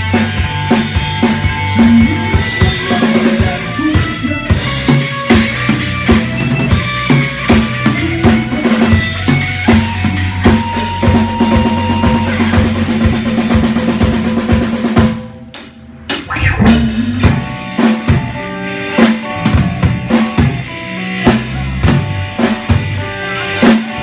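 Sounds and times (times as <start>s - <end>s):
deep bass line: 0.0s - 6.4s, 16.1s - 18.4s
drum kit beat: 0.0s - 23.0s.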